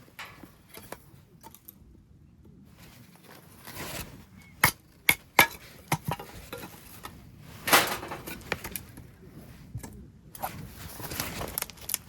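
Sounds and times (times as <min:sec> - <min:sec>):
rustling clatter: 0:05.3 - 0:09.1.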